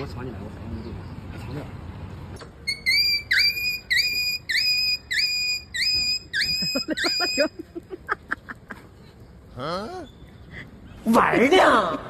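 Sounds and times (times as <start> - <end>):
shrill whistle-like notes: 2.6 - 7.5.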